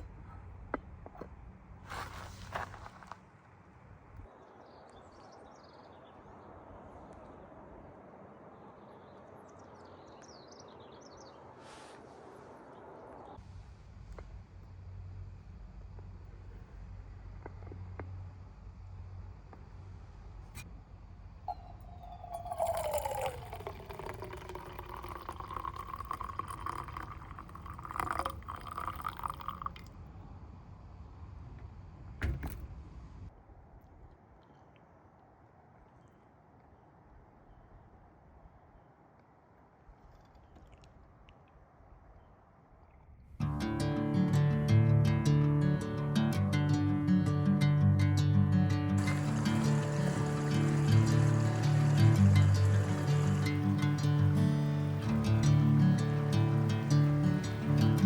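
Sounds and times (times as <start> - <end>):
birds chirping: 21.5 - 29.4, 49.0 - 58.0
water pouring into container: 21.5 - 29.9, 49.0 - 58.0.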